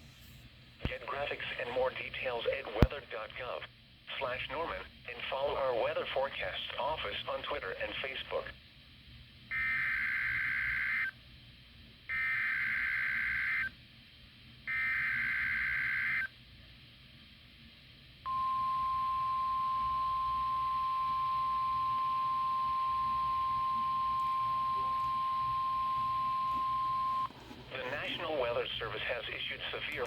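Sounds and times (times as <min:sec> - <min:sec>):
steady warning alarm tone: 0:14.7 - 0:16.3, 0:18.3 - 0:28.6.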